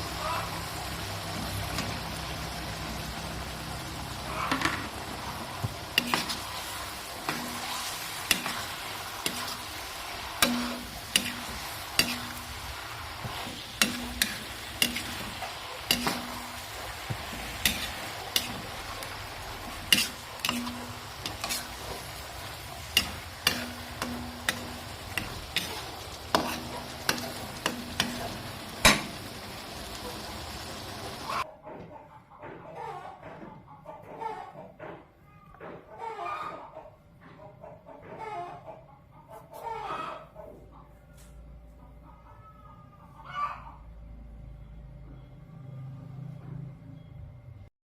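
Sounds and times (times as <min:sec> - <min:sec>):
vegetables sizzling in a pan: 0:00.0 - 0:31.4
spatula scraping a pan: 0:04.5 - 0:28.7.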